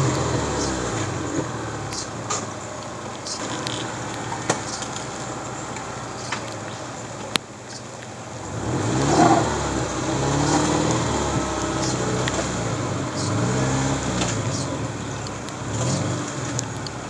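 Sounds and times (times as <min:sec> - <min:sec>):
car engine revving: 0:00.0 - 0:07.4, 0:08.2 - 0:17.0
small clicks: 0:01.0 - 0:08.2, 0:14.2 - 0:17.0.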